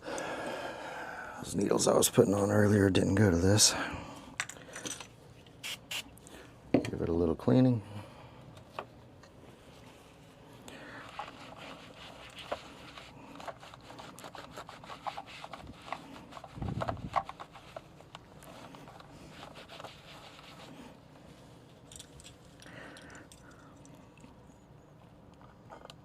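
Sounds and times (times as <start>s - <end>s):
scraping and rubbing by hand: 11.1s - 21.8s.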